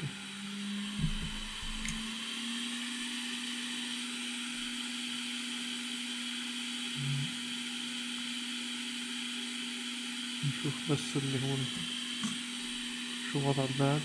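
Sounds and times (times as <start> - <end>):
electric blower whirring: 0.0 - 14.0
steady hum: 1.0 - 2.1.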